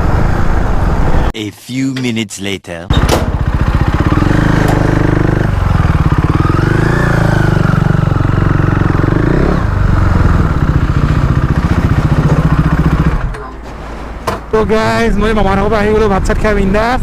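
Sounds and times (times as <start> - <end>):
motorcycle engine revving: 2.9 - 13.3.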